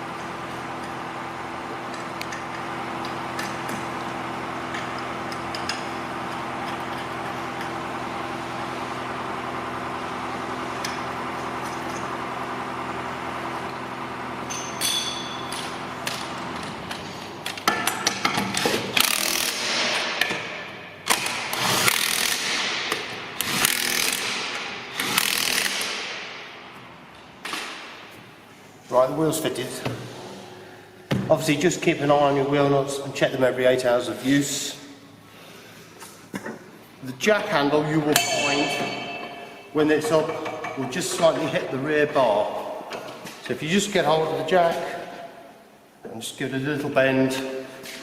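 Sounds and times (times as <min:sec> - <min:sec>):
steady mechanical hum: 0:00.0 - 0:48.0
impact wrench rattling: 0:14.5 - 0:26.6, 0:38.1 - 0:41.4.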